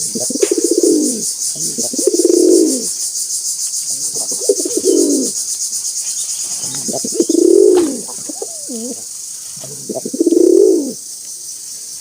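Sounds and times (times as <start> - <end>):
pigeons cooing: 0.0 - 3.0, 3.9 - 5.4, 6.2 - 11.0.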